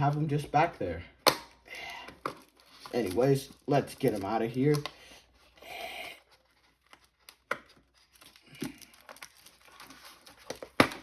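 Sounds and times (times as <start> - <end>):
plastic packaging crinkling: 2.1 - 5.6, 6.3 - 11.0.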